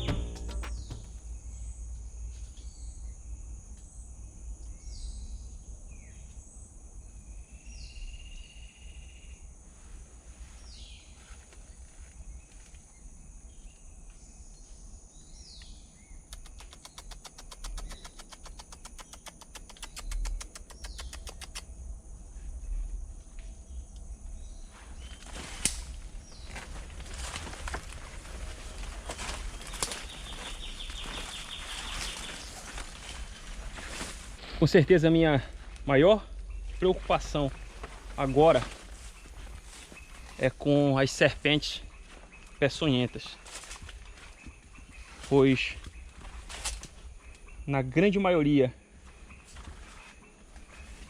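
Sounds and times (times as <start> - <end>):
sharp knock: 0.0 - 1.4
high insect drone: 0.0 - 51.0
fast insect ticking: 16.3 - 21.7.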